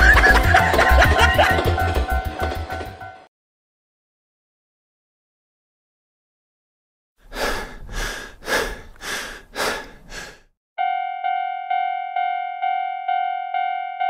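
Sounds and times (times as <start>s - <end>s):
person panting: 7.2s - 10.5s.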